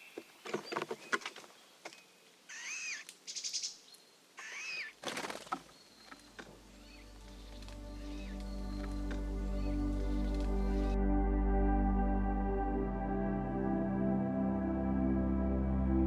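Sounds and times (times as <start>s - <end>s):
soft music: 6.5s - 16.0s.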